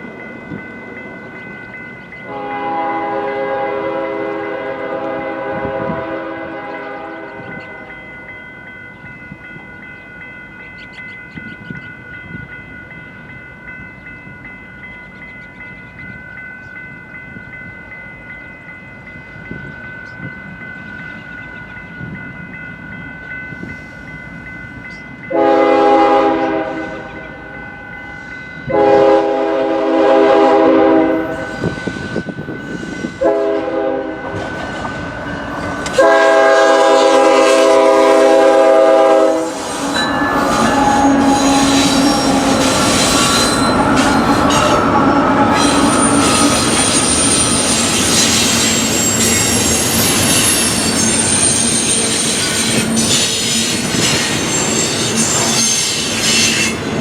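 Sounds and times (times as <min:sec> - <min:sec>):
train air horn: 0:02.2 - 0:07.9, 0:25.3 - 0:27.4, 0:28.6 - 0:31.9, 0:33.0 - 0:34.5, 0:35.8 - 0:49.4
train wheels clattering on rails: 0:31.2 - 0:57.0.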